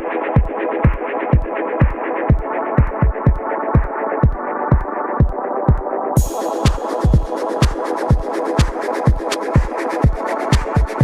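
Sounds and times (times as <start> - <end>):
deep kick drums: 0.4 - 6.3, 7.0 - 7.3, 10.0 - 11.0
ticking hi-hats: 6.2 - 11.0.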